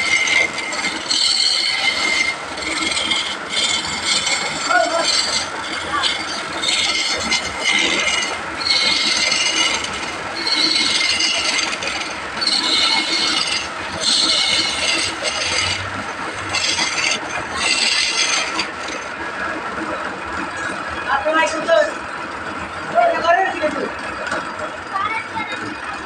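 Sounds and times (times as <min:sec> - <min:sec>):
saw cutting through wood: 0:00.0 - 0:19.2.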